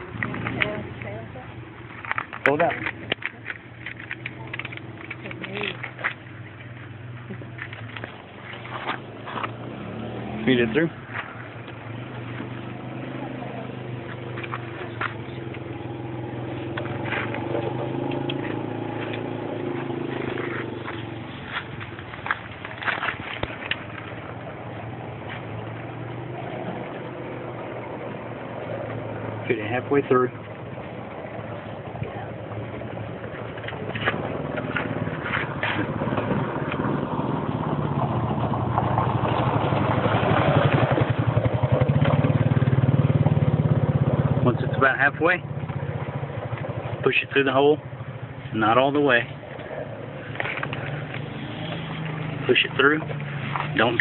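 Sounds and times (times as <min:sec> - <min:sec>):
engine idling: 0:00.0 - 0:54.0
hand tools clicking and scraping: 0:01.8 - 0:09.6, 0:16.6 - 0:24.4, 0:33.3 - 0:36.9, 0:49.4 - 0:54.0.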